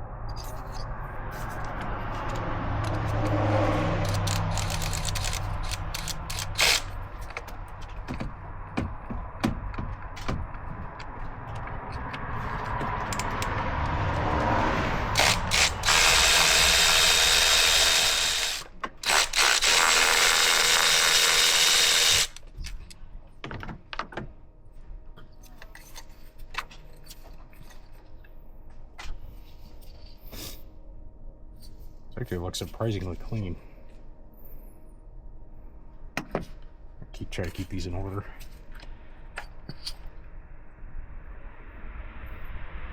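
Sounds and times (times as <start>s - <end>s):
ratchet clicking: 4.0s - 7.4s, 15.2s - 22.4s.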